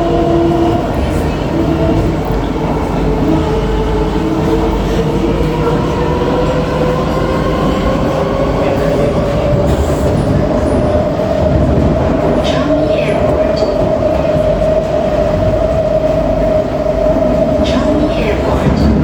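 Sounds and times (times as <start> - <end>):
train wheels rumbling on track: 0.0 - 19.0.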